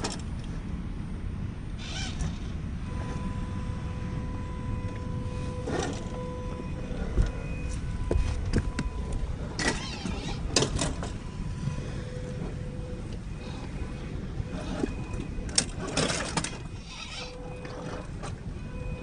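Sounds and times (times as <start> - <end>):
small electric motor whining: 1.8 - 3.7, 9.5 - 10.6, 16.6 - 18.0.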